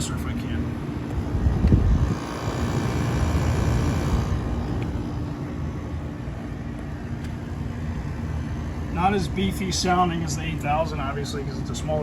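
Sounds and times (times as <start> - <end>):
air conditioner compressor humming: 0.0 - 12.0
fan and air noise: 0.0 - 12.0.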